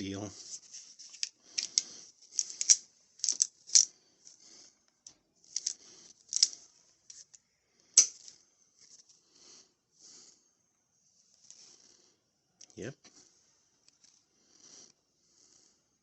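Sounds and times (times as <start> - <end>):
locking pliers clicking and rattling: 1.2 - 3.9, 5.0 - 7.3, 8.0 - 8.3.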